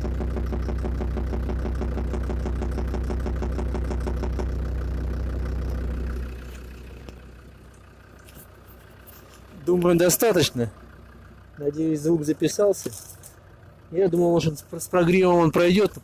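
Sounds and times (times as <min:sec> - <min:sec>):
fast even engine knock: 0:00.0 - 0:05.1
diesel engine idling: 0:00.0 - 0:16.0.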